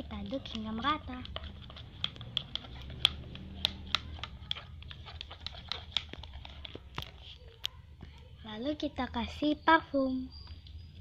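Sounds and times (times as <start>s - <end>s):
stirrer clicking in sticky mixture: 0.0s - 8.3s.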